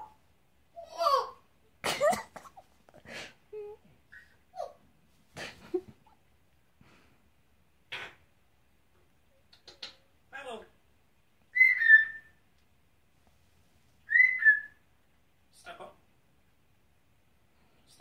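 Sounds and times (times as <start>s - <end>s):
parrot whistling and chirping: 11.5s - 12.4s, 14.0s - 14.8s.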